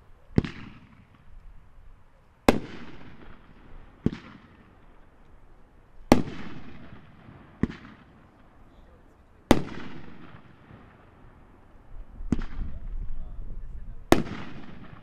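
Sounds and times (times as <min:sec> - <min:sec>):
fireworks booms: 0:00.3 - 0:01.4, 0:02.4 - 0:05.2, 0:06.0 - 0:08.6, 0:09.4 - 0:15.0
small firework pops: 0:00.3 - 0:01.6, 0:02.4 - 0:05.4, 0:06.0 - 0:08.6, 0:12.3 - 0:13.0, 0:14.1 - 0:15.0.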